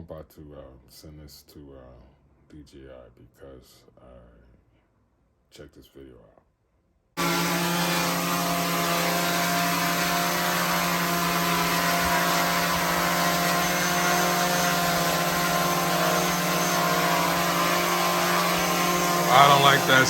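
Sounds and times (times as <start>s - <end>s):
drone propellers humming: 7.2s - 20.0s.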